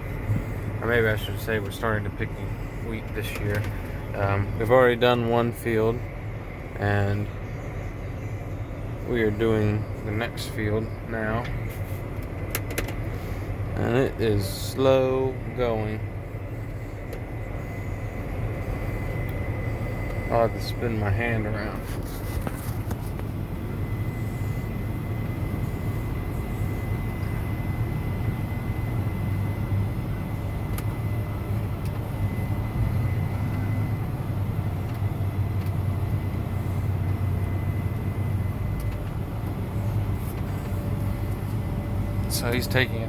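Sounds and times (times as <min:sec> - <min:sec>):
tractor diesel engine drone: 0:00.0 - 0:43.0
thin high whine: 0:13.2 - 0:43.0.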